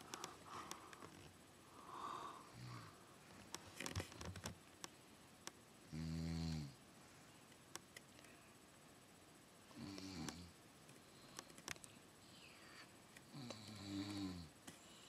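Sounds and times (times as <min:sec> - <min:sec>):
woman breathing noisily: 0:00.0 - 0:03.1.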